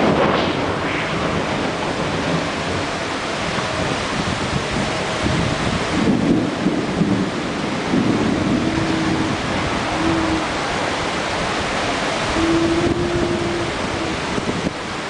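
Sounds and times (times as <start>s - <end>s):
storm wind buffeting microphone: 0.0s - 15.0s
brief low tones: 8.5s - 10.6s, 12.4s - 14.4s.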